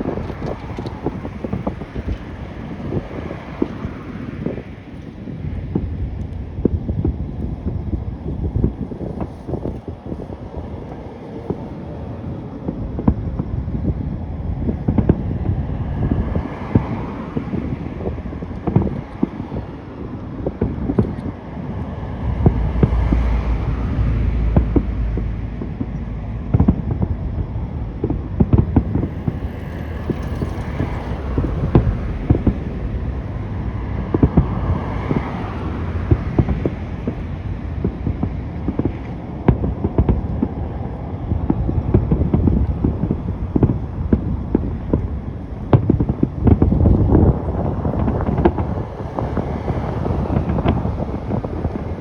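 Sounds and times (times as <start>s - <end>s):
steady low rumble: 0.0s - 52.0s.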